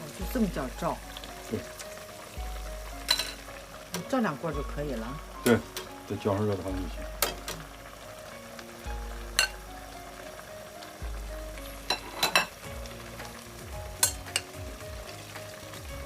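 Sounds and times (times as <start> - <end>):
soft background music: 0.0 - 16.0
stove hissing: 0.0 - 16.0
metal utensils clinking on cookware: 3.1 - 3.4, 7.2 - 7.6, 11.9 - 12.6, 14.0 - 14.5.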